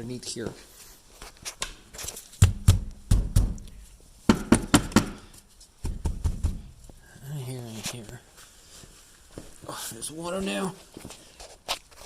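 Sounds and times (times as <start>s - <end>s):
knocks and thumps: 2.4s - 3.7s, 4.3s - 7.0s.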